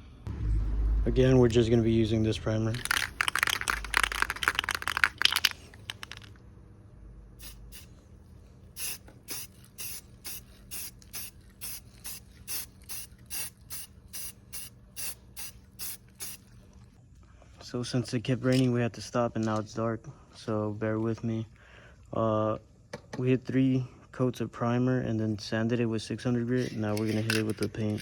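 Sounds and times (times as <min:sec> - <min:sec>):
spray can rattling: 0:02.6 - 0:06.4, 0:07.4 - 0:07.9, 0:08.8 - 0:16.5, 0:26.6 - 0:28.0
spray can hissing bursts: 0:02.8 - 0:05.4, 0:07.4 - 0:07.9, 0:08.8 - 0:16.5.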